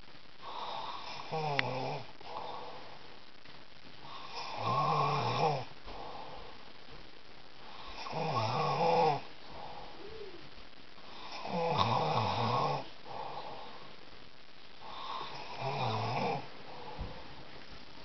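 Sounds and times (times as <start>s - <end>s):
quiet breathing: 0.0s - 18.0s
man snoring: 0.4s - 2.1s, 4.2s - 5.7s, 7.9s - 9.3s, 11.2s - 12.9s, 14.9s - 16.5s.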